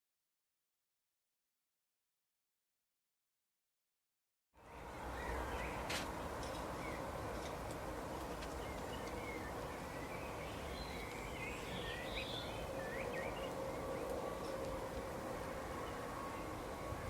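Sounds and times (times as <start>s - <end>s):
small birds chirping: 4.6s - 7.6s, 8.2s - 14.9s.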